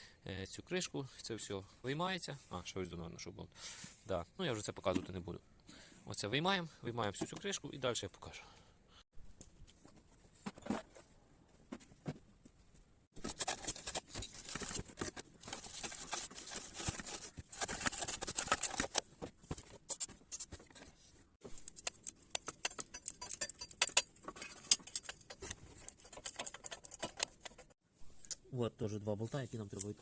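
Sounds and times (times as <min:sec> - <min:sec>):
plastic parts clattering and clicking: 0:13.1 - 0:27.8.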